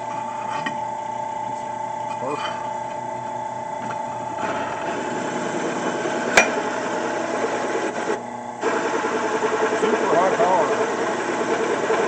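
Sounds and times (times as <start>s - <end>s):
drill press motor hum: 2.6s - 12.0s.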